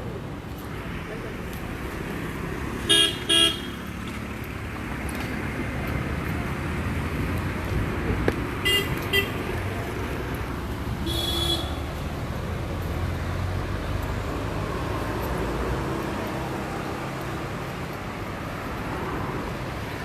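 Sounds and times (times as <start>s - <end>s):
road traffic: 0.0s - 20.0s
vehicle horns tooting: 2.9s - 3.8s, 8.6s - 9.5s, 11.0s - 11.9s.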